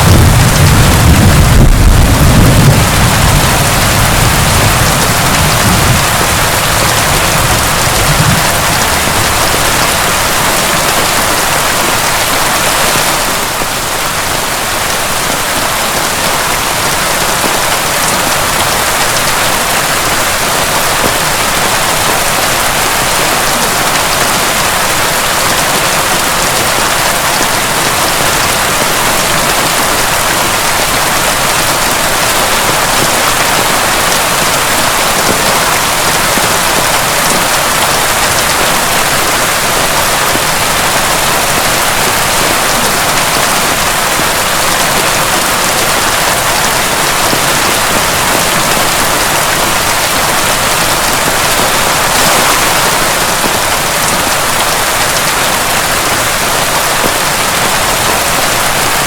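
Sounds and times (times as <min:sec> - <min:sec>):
thunder rumble: 0:00.0 - 0:09.6
heavy rain pouring: 0:00.0 - 0:59.0.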